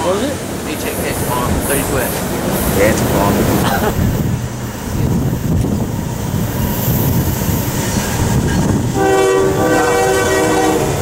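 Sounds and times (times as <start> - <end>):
freight train rumble and clatter: 0.0 - 11.0
locomotive air horn chord: 9.0 - 11.0.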